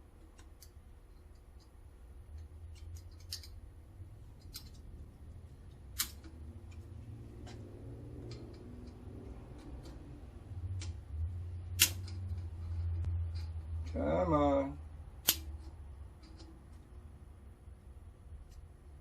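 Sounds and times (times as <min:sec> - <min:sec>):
snap ring snapping: 0:05.9 - 0:06.9, 0:11.7 - 0:12.3, 0:15.2 - 0:15.6.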